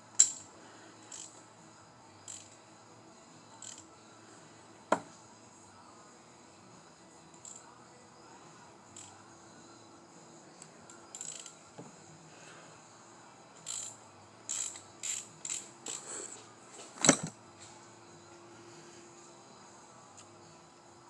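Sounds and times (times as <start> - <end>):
ratchet wrench ratcheting: 0.2 - 1.4, 2.3 - 2.6, 3.6 - 3.9, 7.4 - 7.7, 8.9 - 9.2, 10.9 - 11.6, 13.6 - 16.1.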